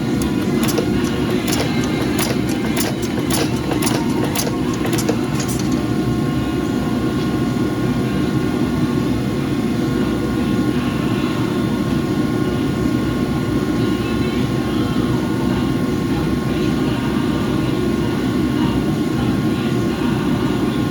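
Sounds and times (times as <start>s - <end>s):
forging equipment roaring: 0.0s - 6.0s
sharp clicks: 0.1s - 5.9s.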